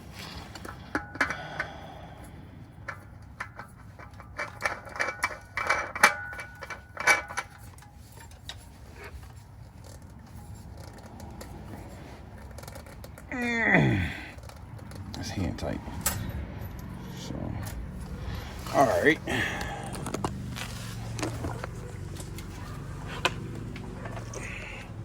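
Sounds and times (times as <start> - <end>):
metal clinking and tapping: 0.5 - 1.8, 2.8 - 13.3.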